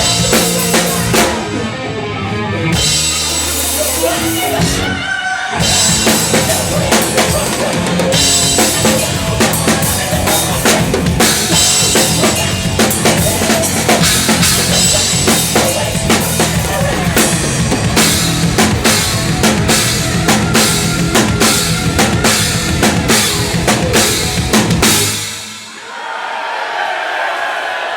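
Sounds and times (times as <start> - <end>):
heavy metal band playing: 0.0 - 25.8
rapid drum hits: 5.6 - 25.5.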